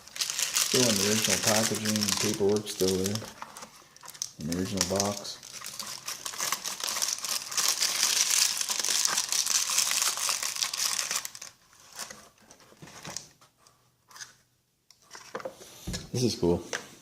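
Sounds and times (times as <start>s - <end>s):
packaging crinkling and rustling: 0.0s - 13.4s.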